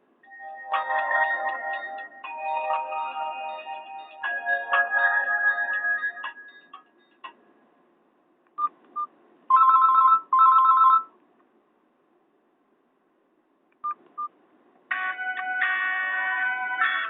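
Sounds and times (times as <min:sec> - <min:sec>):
phone ringtone short beeps: 0:09.5 - 0:11.1.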